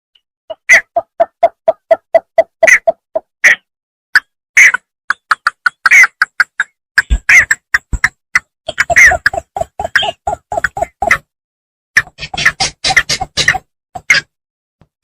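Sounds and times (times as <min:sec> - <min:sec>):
bird calling in clipped notes: 0:00.5 - 0:11.2.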